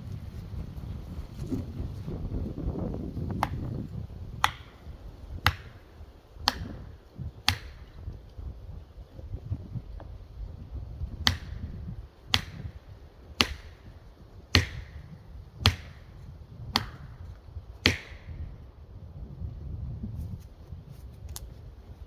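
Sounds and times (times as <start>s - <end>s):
axe chopping wood: 3.3s - 8.3s, 11.0s - 18.5s.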